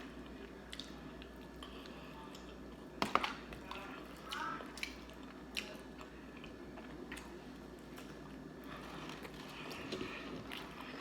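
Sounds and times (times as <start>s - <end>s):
chewing fried chicken: 0.0s - 11.0s.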